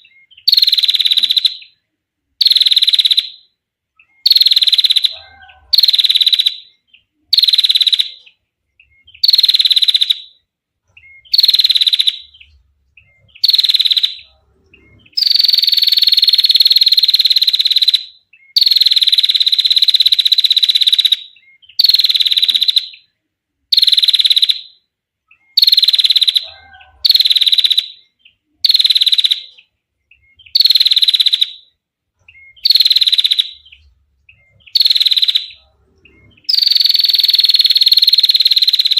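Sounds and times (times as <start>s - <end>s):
bird trilling call: 11.0s - 23.0s, 32.3s - 38.9s.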